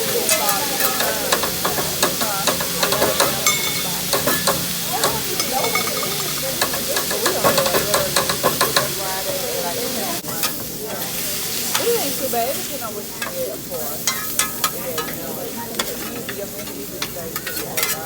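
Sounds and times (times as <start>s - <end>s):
metal spatulas clicking: 0.0s - 9.0s, 14.0s - 18.0s
food sizzling on a griddle: 0.0s - 18.0s.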